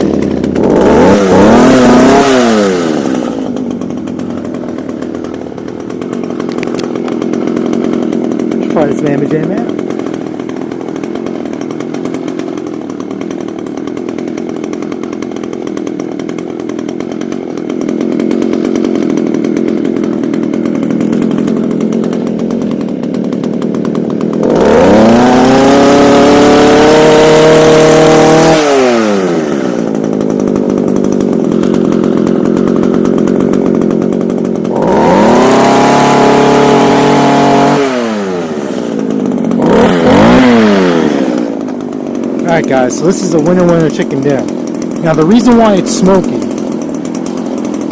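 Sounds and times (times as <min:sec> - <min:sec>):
hedge trimmer engine revving: 0:00.0 - 0:47.9.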